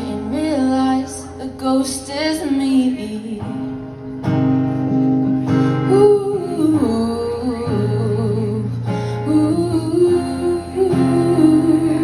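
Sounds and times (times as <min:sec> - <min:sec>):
acoustic guitar chords: 0:00.0 - 0:12.0
person singing wordless melody: 0:05.8 - 0:12.0.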